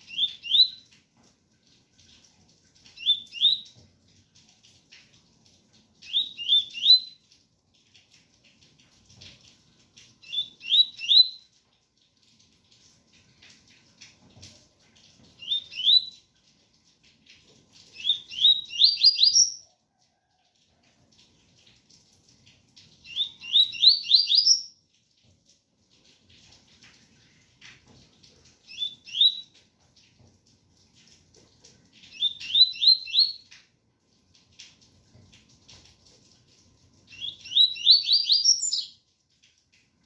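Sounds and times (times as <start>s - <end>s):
bird singing whistled notes: 0.0s - 0.8s, 6.1s - 7.2s, 10.2s - 11.4s, 15.4s - 16.2s, 18.0s - 19.6s, 23.1s - 24.7s, 28.7s - 29.5s, 32.1s - 33.4s, 37.2s - 39.0s
faint rain patter: 0.0s - 40.0s.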